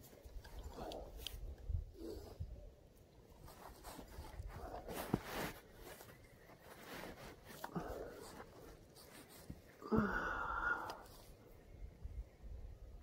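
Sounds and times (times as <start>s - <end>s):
soft rustling: 3.2s - 9.9s
person breathing: 6.8s - 11.5s.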